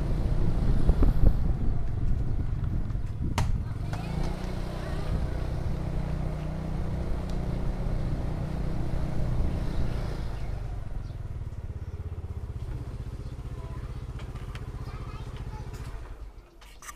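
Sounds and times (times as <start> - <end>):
motorcycle engine: 0.0 - 16.4
road noise: 0.0 - 16.9.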